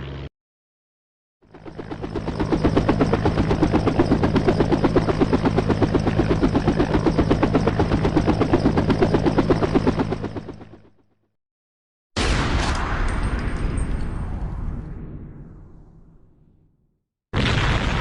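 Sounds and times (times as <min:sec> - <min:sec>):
helicopter rotor thudding: 0:01.5 - 0:11.0.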